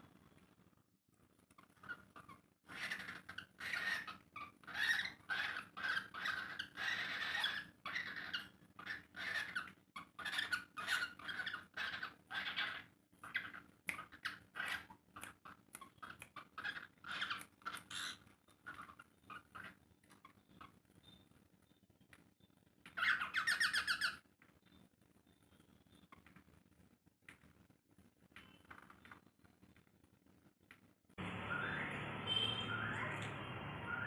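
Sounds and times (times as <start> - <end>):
parrots chirping and chattering: 1.6 - 21.3, 22.8 - 24.3.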